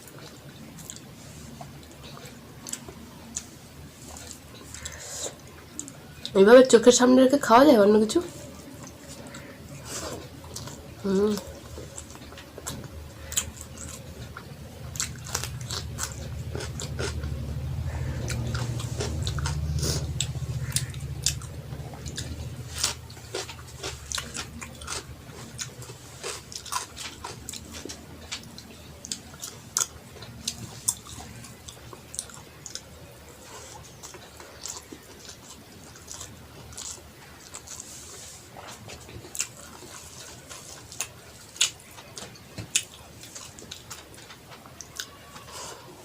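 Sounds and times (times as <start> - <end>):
chewing with wet mouth smacks: 0.0 - 6.4, 8.3 - 45.7
low rumble: 8.2 - 26.2.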